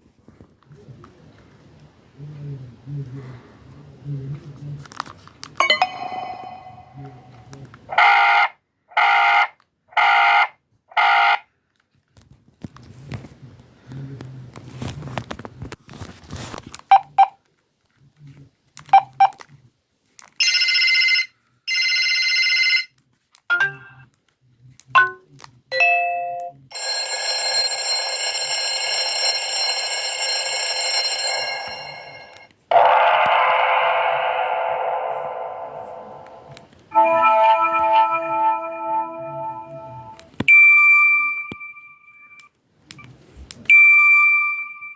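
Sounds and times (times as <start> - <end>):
clicking and handling noise: 4.8 - 5.6
phone ringtones through speaker: 5.6 - 7.5, 26.7 - 34.4.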